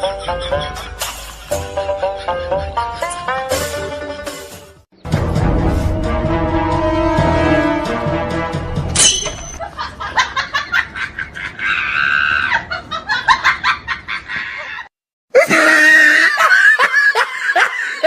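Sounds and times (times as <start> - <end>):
voice shrieking laughing and screaming: 11.4 - 12.8, 14.3 - 18.0.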